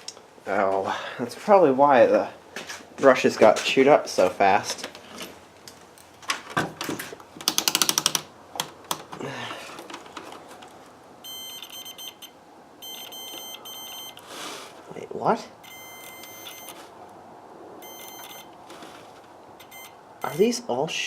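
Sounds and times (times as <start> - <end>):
sharp clicks: 7.4 - 9.1
electronic continuity beeper: 11.2 - 14.2, 15.6 - 16.8, 17.8 - 18.5, 19.6 - 20.4.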